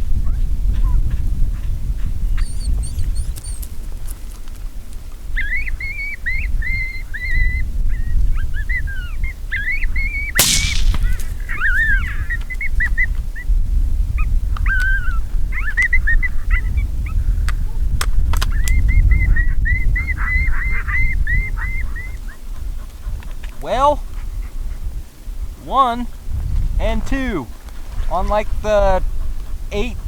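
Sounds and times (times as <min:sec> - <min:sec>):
sharp crack: 0:10.4 - 0:11.8.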